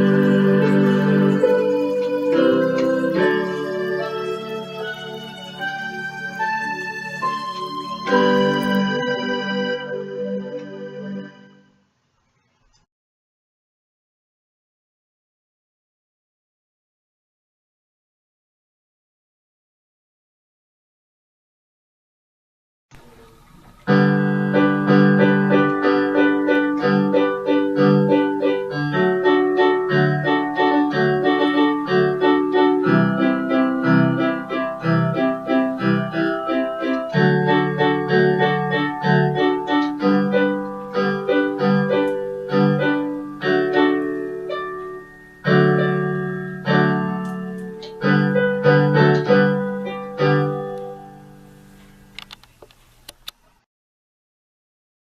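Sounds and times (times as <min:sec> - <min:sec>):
keyboard chords over bass line: 0:00.0 - 0:11.6, 0:23.9 - 0:51.4.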